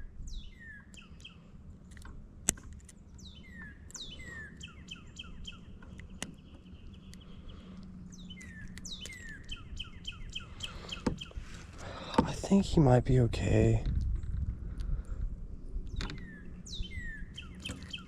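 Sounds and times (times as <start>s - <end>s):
songbird singing: 0.0s - 15.0s, 15.7s - 18.0s
sharp clicks: 1.9s - 3.0s.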